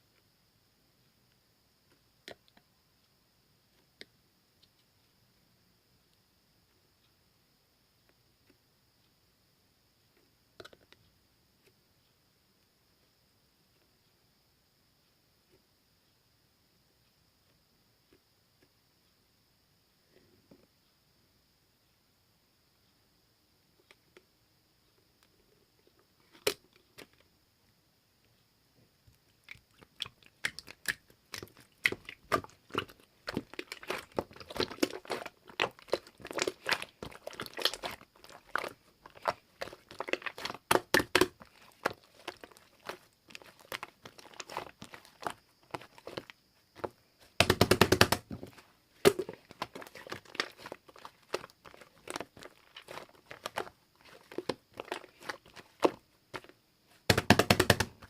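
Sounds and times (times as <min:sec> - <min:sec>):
slime crunchy clicks and crackles: 0:29.4 - 0:46.9, 0:47.5 - 0:56.5.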